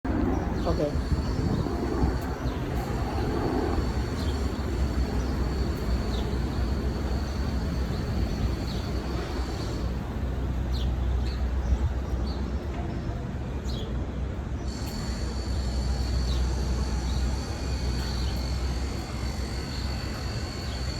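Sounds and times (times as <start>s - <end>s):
distant traffic rumble: 0.1s - 12.8s.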